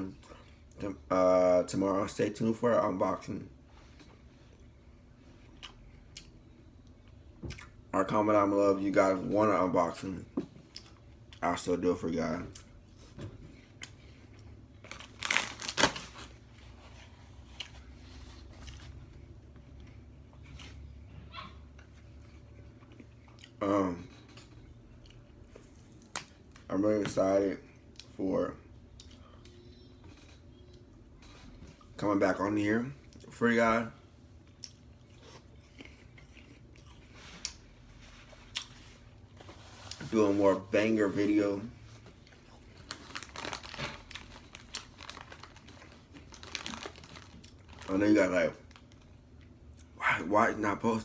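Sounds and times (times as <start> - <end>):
person chewing with crunches: 4.0 - 7.8, 12.5 - 15.8, 16.5 - 21.1, 21.8 - 26.4, 34.3 - 40.1, 42.2 - 47.9
crunching snack food: 42.8 - 49.0.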